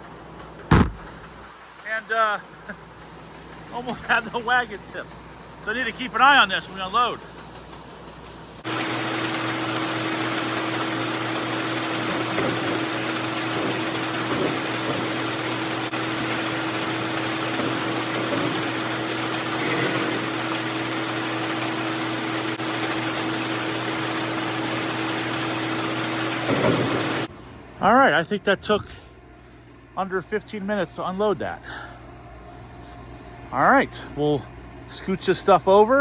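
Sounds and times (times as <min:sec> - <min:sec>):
grain auger drone: 0:08.6 - 0:27.3
rushing hiss of moving corn: 0:08.6 - 0:27.3.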